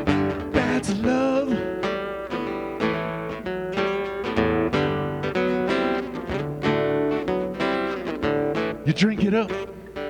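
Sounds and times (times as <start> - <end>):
acoustic guitar strumming: 0.0 - 10.0
person singing: 0.1 - 2.1.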